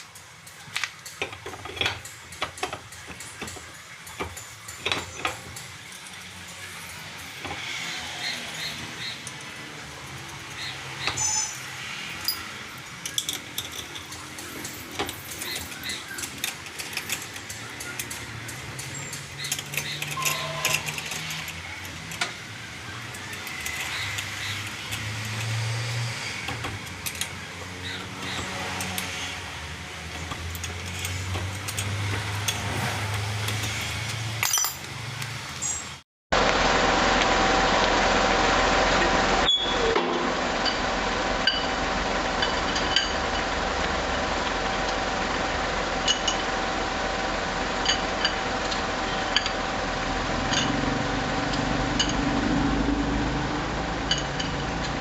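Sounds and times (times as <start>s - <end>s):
metallic clinks of tools: 11.2s - 22.3s, 30.5s - 34.9s.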